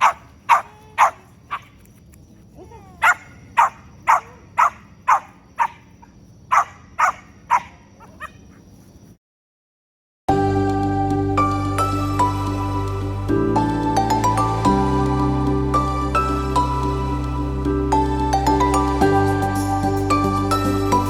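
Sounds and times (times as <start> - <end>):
dog barking sharp high yaps: 6.5 - 8.6.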